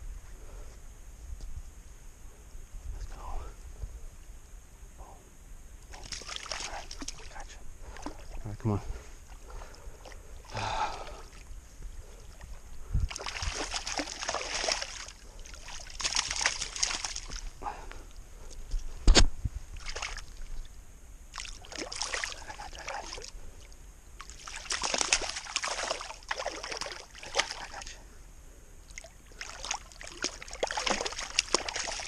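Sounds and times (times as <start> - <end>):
water splashing and sloshing: 5.8 - 17.6, 19.7 - 28.0, 28.9 - 32.0.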